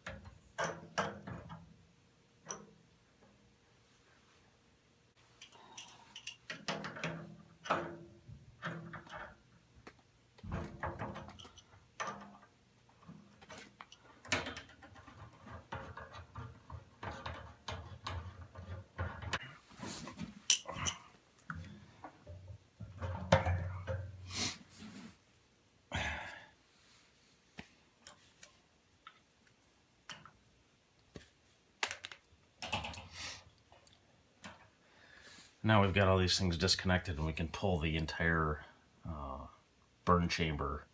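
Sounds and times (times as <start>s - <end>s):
wrench clicking and scraping metal: 5.4s - 7.8s.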